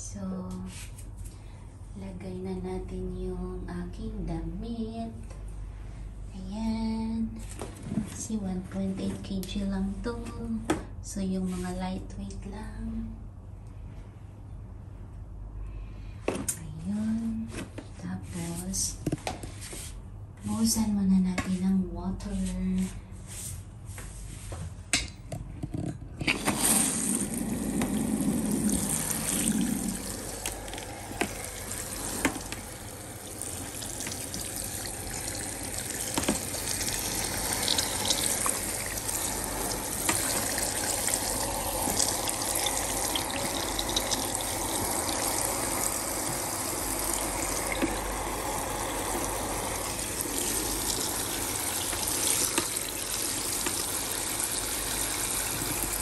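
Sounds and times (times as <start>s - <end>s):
water running into tub: 26.4s - 56.0s.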